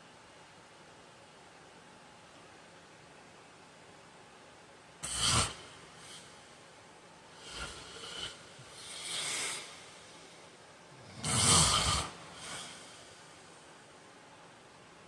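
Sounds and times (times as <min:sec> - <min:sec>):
man snoring: 0:05.0 - 0:06.2, 0:07.4 - 0:10.0, 0:11.0 - 0:13.0
soft airy breaths: 0:05.0 - 0:13.9.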